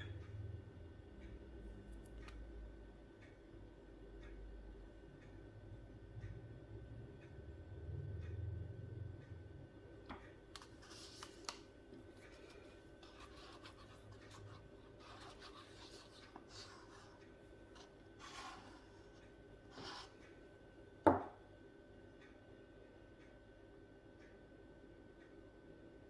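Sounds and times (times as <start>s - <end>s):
stirring stick scraping a cup: 12.2s - 20.2s.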